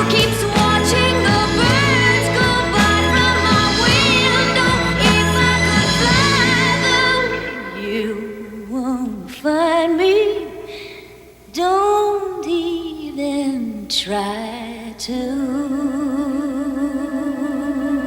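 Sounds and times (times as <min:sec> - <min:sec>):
background music: 0:00.0 - 0:08.6.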